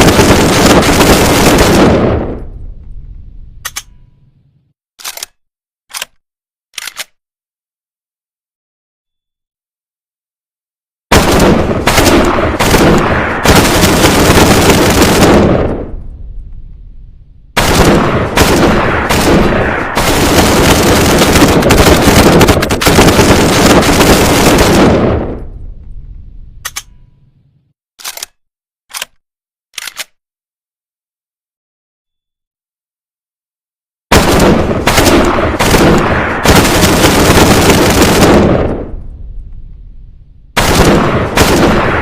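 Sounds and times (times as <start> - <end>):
submachine gun firing bursts: 0.0 - 2.1, 11.2 - 15.6, 17.6 - 25.2, 34.2 - 38.7, 40.6 - 41.9.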